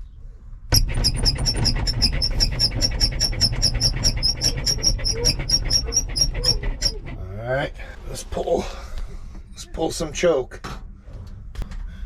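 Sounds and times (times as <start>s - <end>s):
fuel pump ticking: 0.7s - 7.2s
low rumble: 6.4s - 10.0s.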